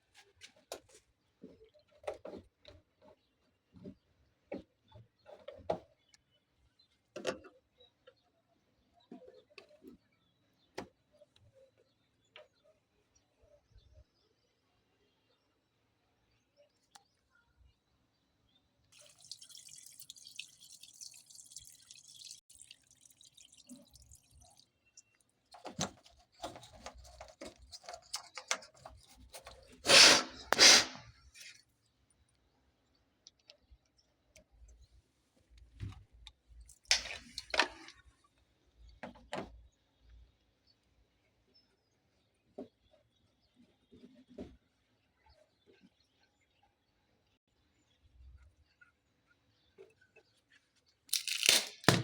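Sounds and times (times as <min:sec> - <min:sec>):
water hissing: 0:29.8 - 0:31.5
water splashing and sloshing: 0:36.6 - 0:38.1.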